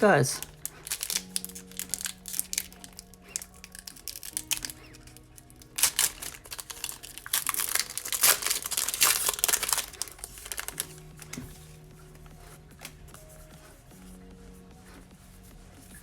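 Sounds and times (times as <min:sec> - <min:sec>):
foil wrapper crinkling: 0:00.0 - 0:11.6
soft background music: 0:00.0 - 0:16.0.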